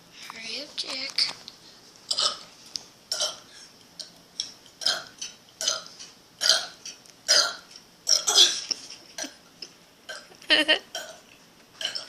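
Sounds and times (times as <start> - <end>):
person burping: 2.1 - 2.4, 4.8 - 9.4, 10.1 - 11.2, 11.8 - 12.0.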